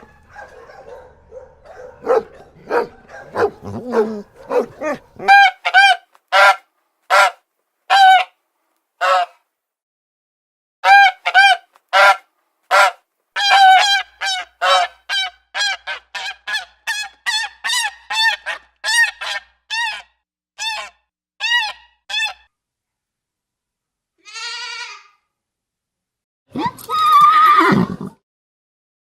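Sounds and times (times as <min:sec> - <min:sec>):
goose honking: 0:02.0 - 0:08.3, 0:10.8 - 0:16.7.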